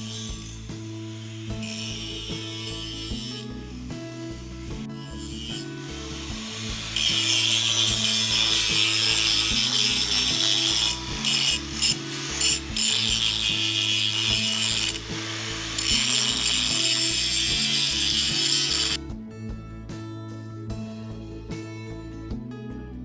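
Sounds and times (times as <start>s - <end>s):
power tool grinding steel: 0.0s - 19.0s
background music: 0.0s - 23.0s.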